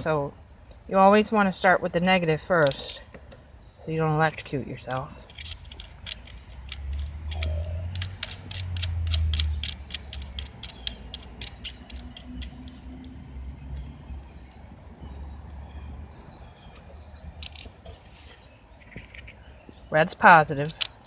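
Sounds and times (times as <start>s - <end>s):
rapid sharp clicking: 5.3s - 13.2s.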